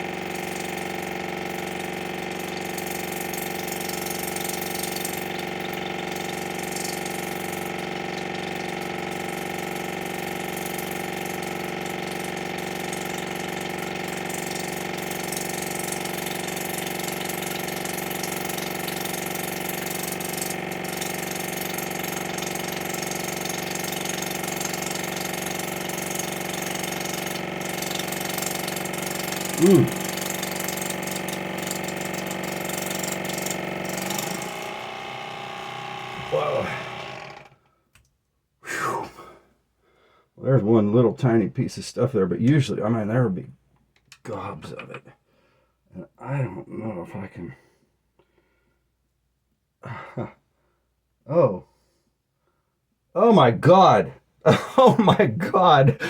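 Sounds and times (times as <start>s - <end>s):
small pump motor humming: 0.0s - 37.7s, 54.5s - 56.0s.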